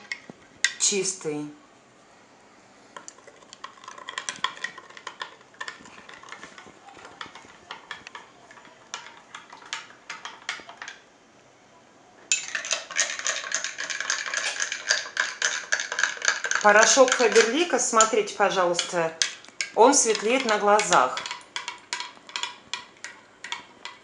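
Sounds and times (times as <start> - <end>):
spoon clinking in glass cups: 3.6 - 11.0, 12.3 - 24.0.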